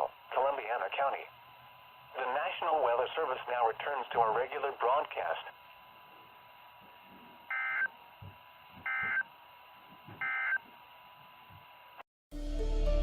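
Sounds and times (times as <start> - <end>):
radio hiss: 0.0 - 6.1
thin steady whine: 0.0 - 12.0
music: 12.3 - 13.0.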